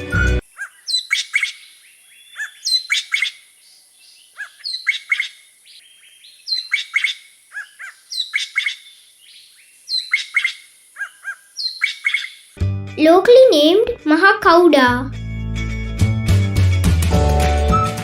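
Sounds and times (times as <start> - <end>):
bird calling with whistles and clicks: 0.0 - 12.6.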